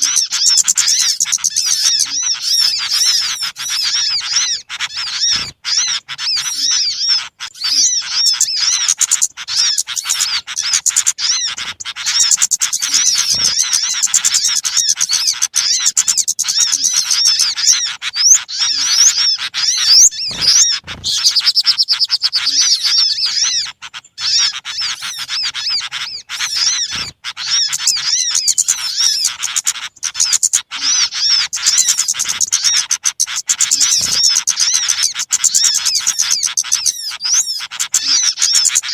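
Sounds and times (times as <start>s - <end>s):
small birds chirping and twittering: 0.0s - 38.9s.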